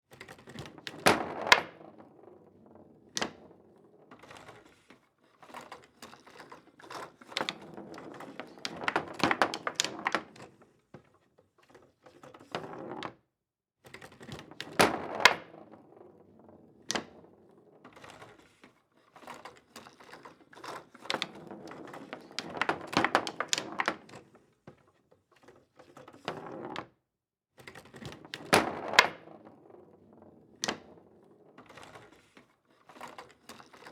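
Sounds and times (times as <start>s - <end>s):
foosball players clacking ball: 6.9s - 10.4s, 20.9s - 24.2s.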